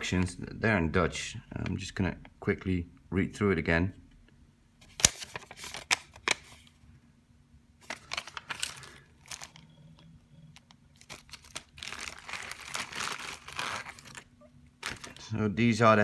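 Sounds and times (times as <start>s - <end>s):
paper and plastic crinkling: 4.8s - 6.8s, 7.8s - 15.4s.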